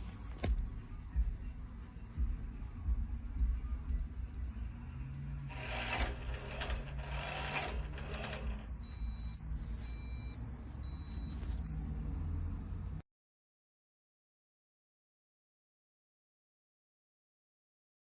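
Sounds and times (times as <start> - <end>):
high electronic beeps: 3.4 - 11.7
lock mechanism whirring: 5.5 - 9.4.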